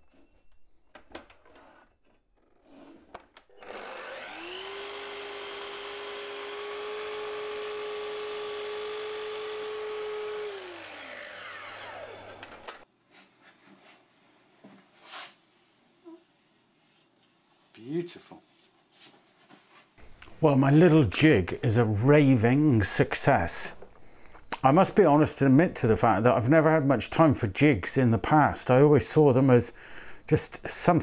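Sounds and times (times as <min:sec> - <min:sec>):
power saw motor whine: 0:03.4 - 0:12.8.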